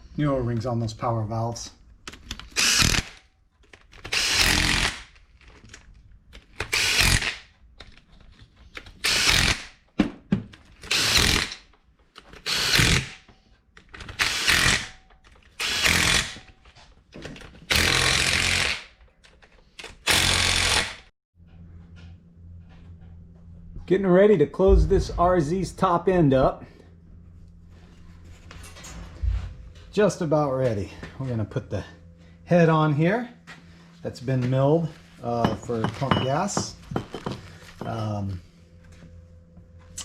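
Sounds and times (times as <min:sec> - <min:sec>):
power tool bursts: 0:04.0 - 0:05.1, 0:12.4 - 0:13.2, 0:15.6 - 0:16.4, 0:20.0 - 0:21.0.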